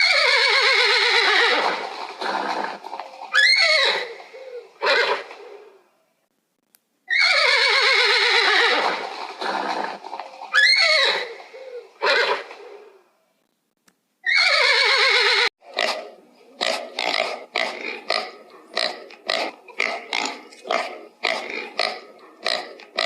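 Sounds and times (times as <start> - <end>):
horse whinnying: 0.0 - 2.8, 3.4 - 5.6, 7.1 - 12.9, 14.2 - 15.5.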